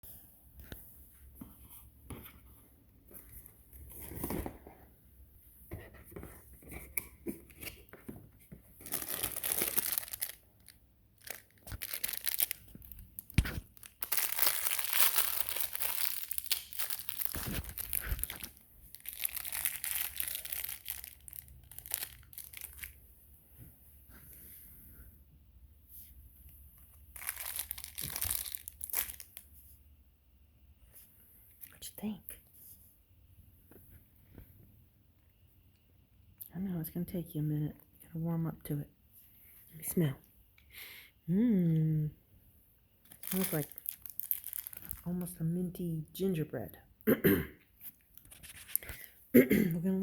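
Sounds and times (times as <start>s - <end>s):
packaging torn and crinkled: 8.8s - 23.0s, 27.1s - 29.4s, 43.1s - 45.2s, 48.1s - 49.1s.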